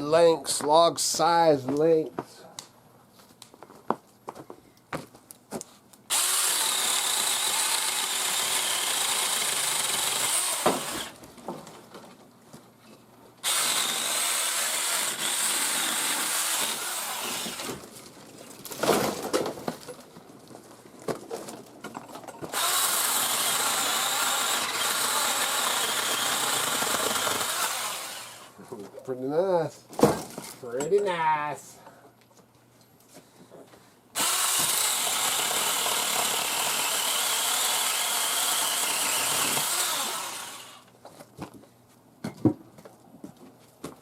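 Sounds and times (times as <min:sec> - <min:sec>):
electric pole saw cutting branches: 0:06.1 - 0:11.2, 0:13.4 - 0:17.8, 0:22.5 - 0:28.6, 0:34.2 - 0:40.9.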